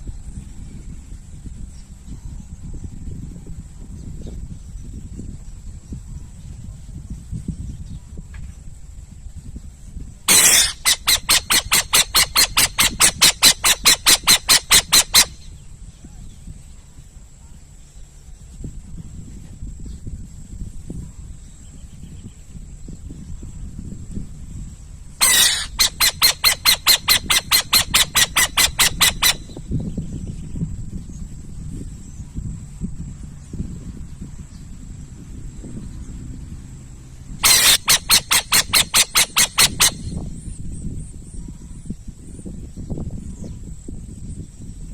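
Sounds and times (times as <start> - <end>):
owl screeching: 10.3 - 15.4, 25.2 - 29.5, 37.4 - 40.2
owl short harsh notes: 10.3 - 15.4, 25.2 - 29.5, 37.4 - 40.1.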